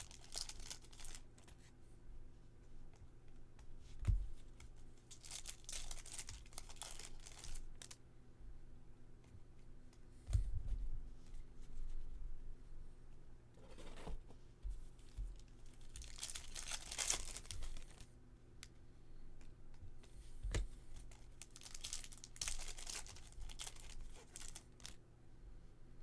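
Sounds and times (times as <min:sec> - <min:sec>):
wrappers tearing and crinkling: 0:00.0 - 0:01.4, 0:05.1 - 0:08.0, 0:15.7 - 0:18.1, 0:21.0 - 0:25.0.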